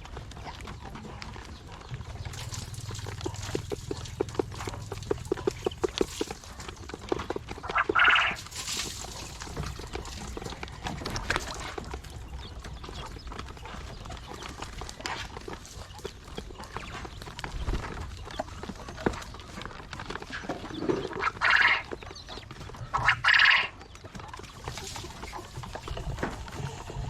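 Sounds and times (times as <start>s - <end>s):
quail calls: 7.7s - 8.4s, 20.9s - 21.9s, 22.8s - 23.8s.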